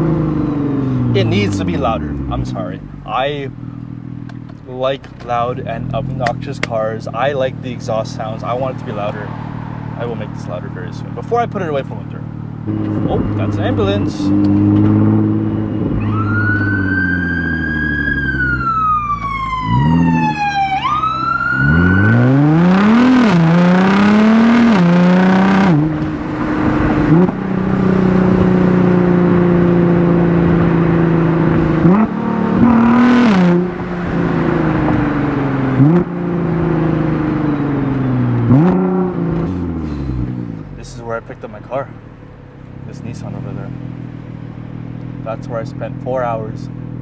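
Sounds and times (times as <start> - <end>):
car engine revving: 0.0 - 47.0
ambulance siren wailing: 14.8 - 29.4.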